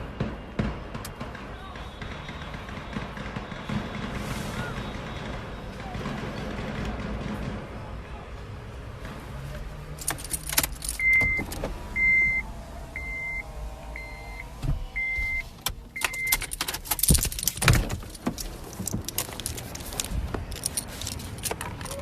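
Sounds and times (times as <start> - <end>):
sharp clicks and bangs: 0.1 - 8.0, 14.6 - 22.0
high electronic beep: 11.0 - 12.4, 13.0 - 13.4, 14.0 - 16.4.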